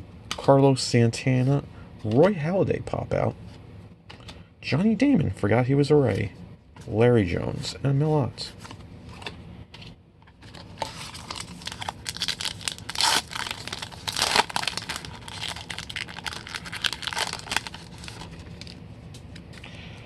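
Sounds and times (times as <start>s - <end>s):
plastic wrapper crinkling and tearing: 10.5s - 18.8s.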